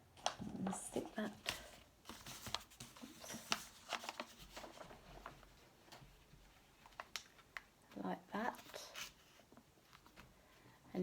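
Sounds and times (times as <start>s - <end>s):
cardboard clicking and rustling: 0.2s - 7.7s.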